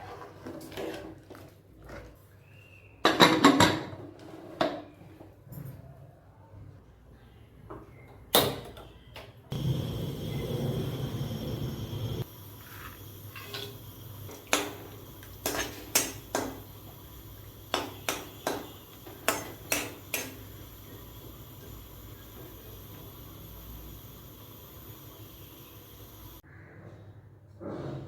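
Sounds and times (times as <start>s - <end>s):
faint steady hiss: 9.5s - 26.4s
metal spoon clinking on pot: 14.4s - 16.7s, 17.7s - 20.5s.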